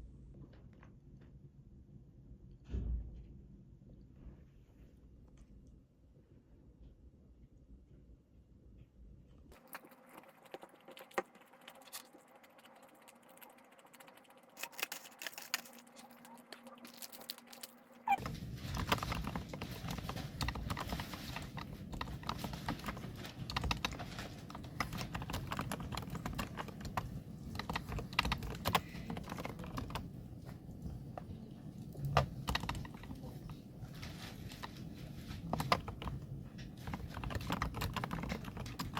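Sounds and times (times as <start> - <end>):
low background hum: 0.0 - 38.9
keyboard typing clicks: 18.8 - 30.1, 32.2 - 33.2.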